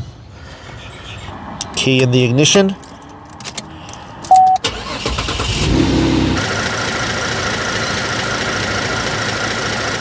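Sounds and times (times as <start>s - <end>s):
car engine cranking: 2.8s - 10.0s
short beep: 4.3s - 4.7s
car engine idling: 6.3s - 10.0s.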